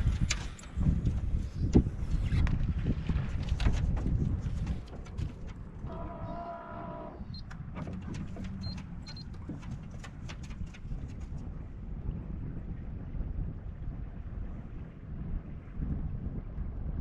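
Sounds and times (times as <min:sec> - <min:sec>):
wind rumbling on microphone: 0:00.0 - 0:17.0.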